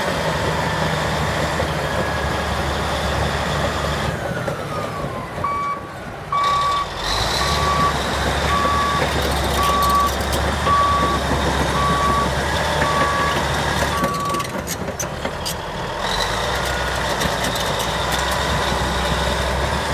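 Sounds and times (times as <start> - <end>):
diesel engine drone: 0.0 - 19.9
backup alarm beeping: 5.4 - 6.9, 7.5 - 14.4.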